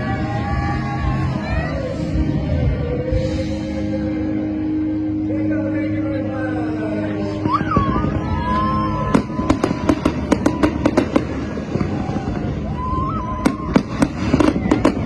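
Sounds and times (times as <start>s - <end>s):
fireworks cracking: 7.1s - 15.0s.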